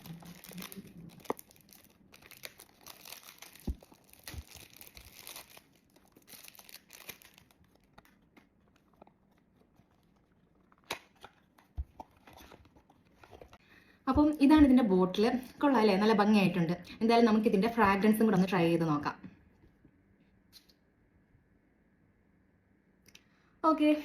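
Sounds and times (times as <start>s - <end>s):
cardboard and wrapping crinkling: 0.0s - 13.6s.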